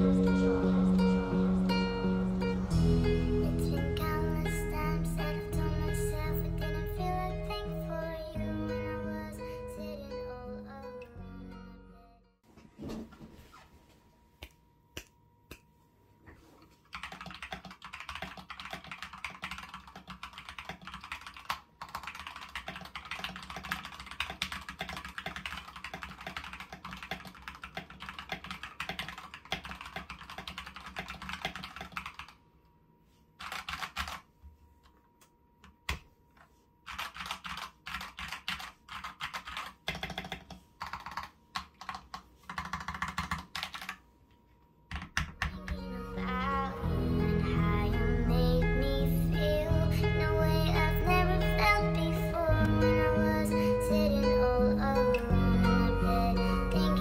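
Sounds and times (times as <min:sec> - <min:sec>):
mechanical keyboard typing: 0:16.8 - 0:32.4, 0:33.4 - 0:34.3, 0:36.8 - 0:44.0, 0:44.9 - 0:45.8.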